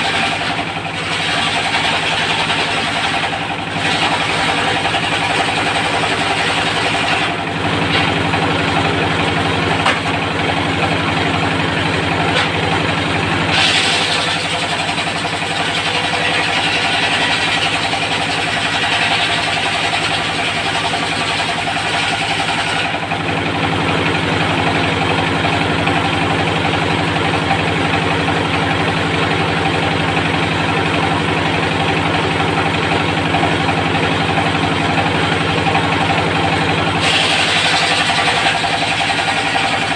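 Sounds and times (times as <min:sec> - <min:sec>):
saw blade cutting wood: 0:00.0 - 0:08.3, 0:12.2 - 0:12.8, 0:13.4 - 0:23.0, 0:36.9 - 0:39.9
diesel engine running: 0:00.0 - 0:39.9.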